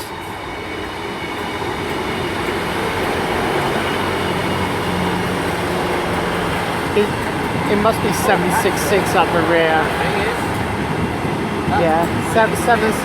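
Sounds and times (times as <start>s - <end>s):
train rumble: 0.0s - 13.0s
diesel engines running: 2.7s - 13.0s.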